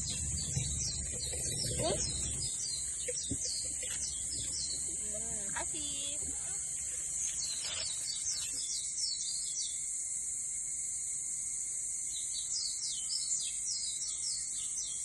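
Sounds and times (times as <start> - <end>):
birds chirping: 0.0 - 9.8
insects droning: 0.0 - 15.0.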